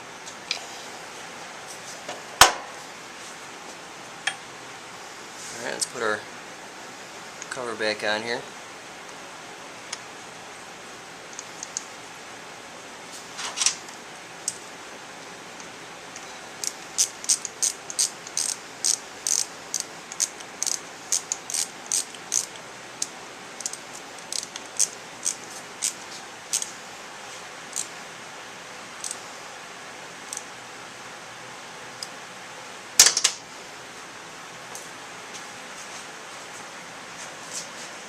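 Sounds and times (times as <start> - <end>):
ratchet clicking: 16.6 - 26.7, 29.0 - 29.2.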